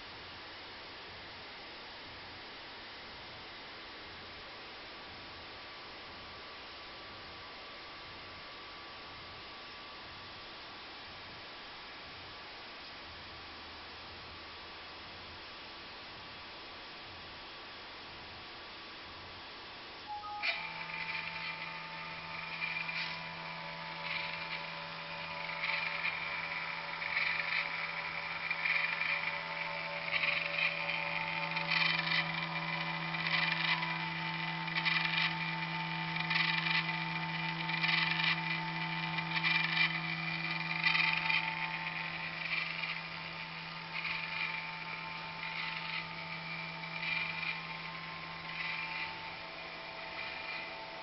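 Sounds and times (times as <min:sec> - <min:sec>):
higher-pitched motor bursts: 0:20.1 - 0:51.0
stepper motors whining: 0:20.1 - 0:51.0.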